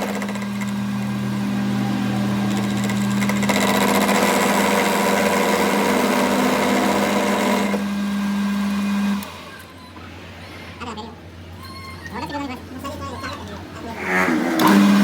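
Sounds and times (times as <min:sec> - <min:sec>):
workshop machine humming: 0:00.0 - 0:11.6, 0:12.6 - 0:15.0
harsh grating noise: 0:00.2 - 0:07.0.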